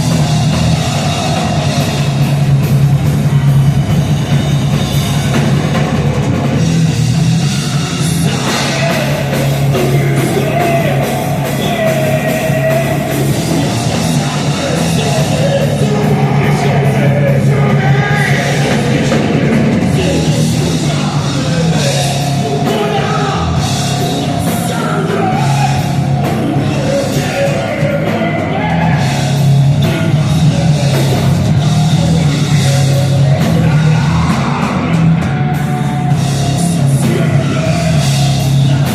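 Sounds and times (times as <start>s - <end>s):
drum kit: 0.0s - 38.9s
rock band playing loud: 0.0s - 38.9s
person singing: 7.8s - 38.9s.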